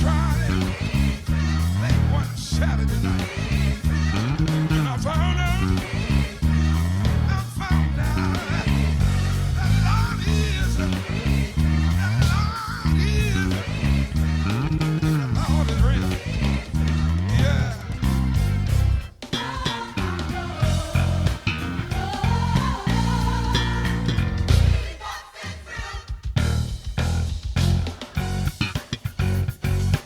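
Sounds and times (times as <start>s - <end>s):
low plucked notes with slides: 0.0s - 24.8s
higher bending melody: 16.8s - 24.8s.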